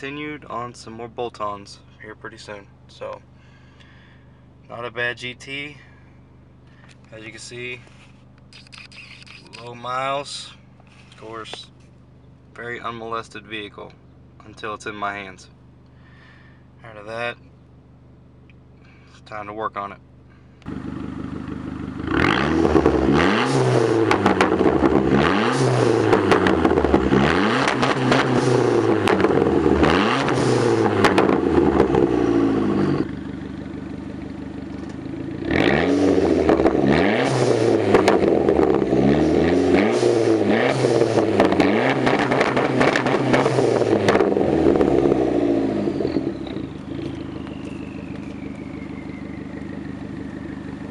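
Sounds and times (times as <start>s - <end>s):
exhaust crackles: 0.0s - 50.9s
car engine revving: 20.6s - 50.9s
faint falling whistle: 46.0s - 49.9s.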